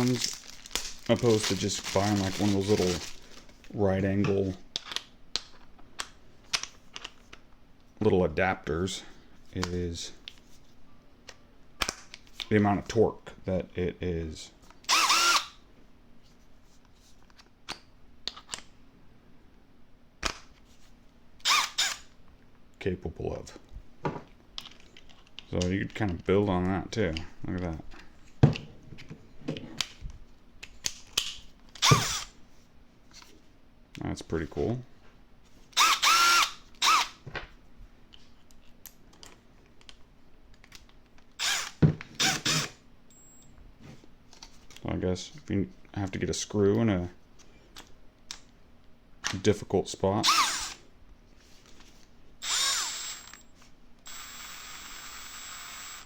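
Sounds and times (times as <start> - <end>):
drill clicks and taps: 14.9 - 15.5, 31.8 - 32.3, 41.4 - 42.7, 50.2 - 50.8, 52.4 - 53.4
drill motor whine: 14.9 - 15.5, 31.8 - 32.3, 35.8 - 37.1, 41.4 - 43.3, 50.2 - 50.8, 52.4 - 53.4, 54.0 - 56.0.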